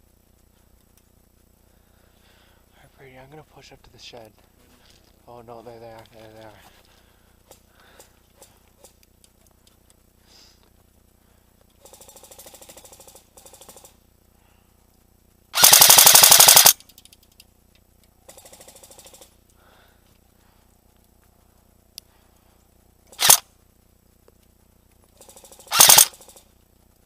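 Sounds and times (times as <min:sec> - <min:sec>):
airsoft guns firing bursts: 0:11.8 - 0:14.0, 0:15.6 - 0:16.8, 0:18.2 - 0:19.4, 0:23.1 - 0:23.4, 0:25.2 - 0:26.5.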